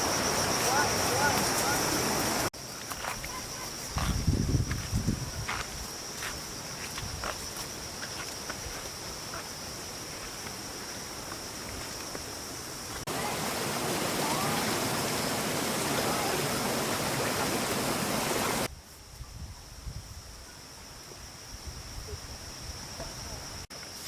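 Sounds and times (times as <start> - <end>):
stream water rushing: 0.0 - 2.5, 10.7 - 18.7
high insect drone: 0.0 - 24.0.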